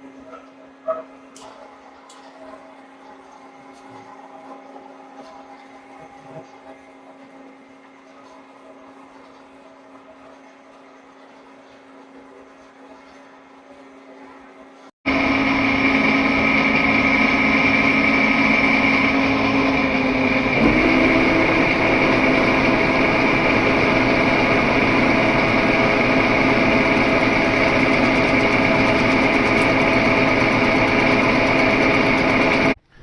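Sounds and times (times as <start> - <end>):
milling machine whining: 15.1 - 32.8.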